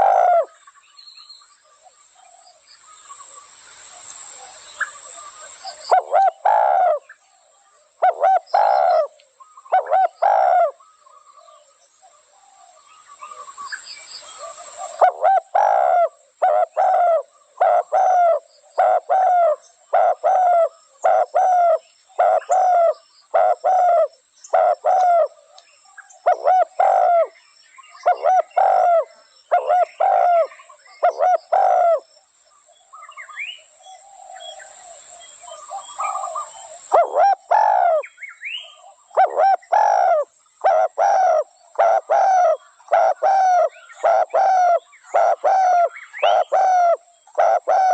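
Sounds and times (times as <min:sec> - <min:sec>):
dove cooing: 0:00.0 - 0:00.6, 0:04.4 - 0:07.1, 0:08.0 - 0:11.6, 0:14.3 - 0:25.5, 0:26.2 - 0:27.4, 0:28.0 - 0:32.1, 0:34.0 - 0:47.9
faint high bird chirps: 0:32.8 - 0:47.9.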